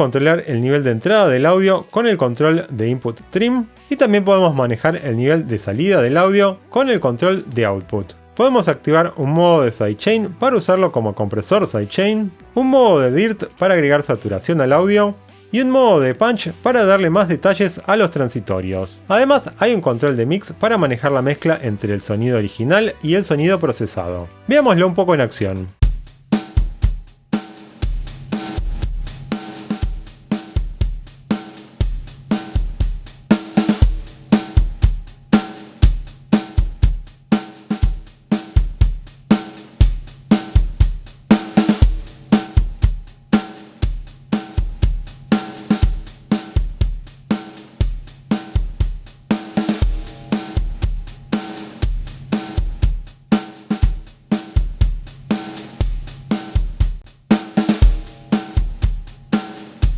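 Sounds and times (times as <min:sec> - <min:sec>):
drum kit beat: 0:05.6 - 0:06.3, 0:25.8 - 0:59.9.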